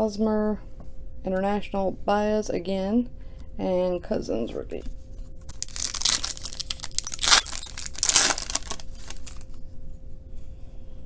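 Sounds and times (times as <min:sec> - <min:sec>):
card pack wrapper tearing and crinkling: 0:05.5 - 0:09.6.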